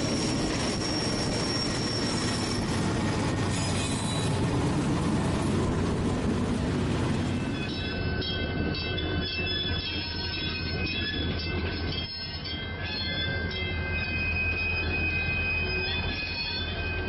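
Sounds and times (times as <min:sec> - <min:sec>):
high-pitched wheel squeal: 0:00.0 - 0:02.8, 0:03.5 - 0:04.4, 0:07.4 - 0:17.0
train rumbling by: 0:00.0 - 0:17.0.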